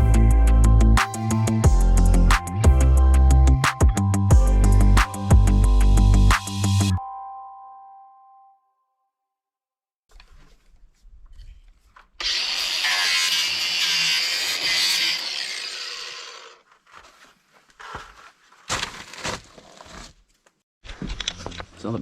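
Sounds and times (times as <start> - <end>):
power saw cutting panel: 12.2 - 16.6.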